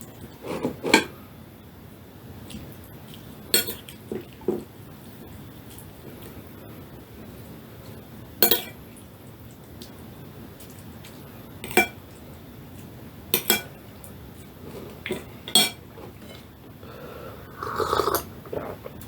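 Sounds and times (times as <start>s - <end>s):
cutlery clinking against plate: 3.6s - 4.0s, 8.4s - 8.8s, 11.7s - 12.0s, 13.4s - 13.8s, 15.1s - 16.4s.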